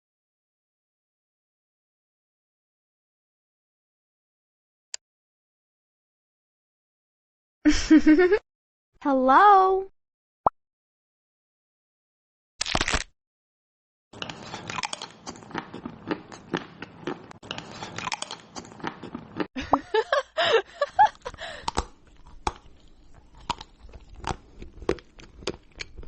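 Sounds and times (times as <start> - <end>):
crunchy chewing: 14.2 - 19.5, 21.0 - 26.0.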